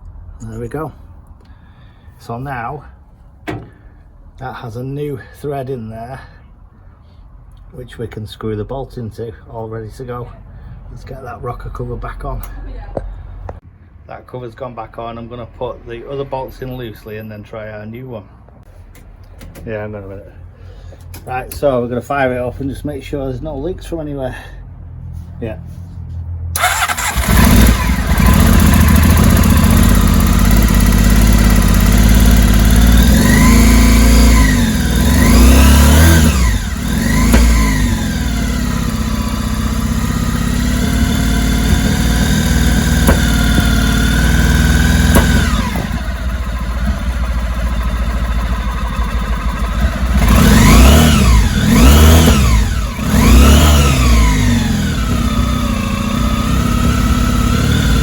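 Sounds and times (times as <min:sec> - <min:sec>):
car engine revving: 0:26.6 - 0:58.0.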